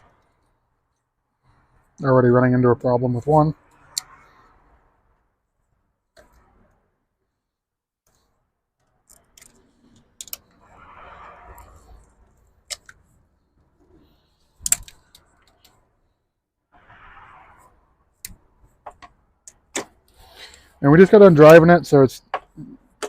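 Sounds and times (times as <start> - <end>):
soft rushing noise: 10.5 - 14.2.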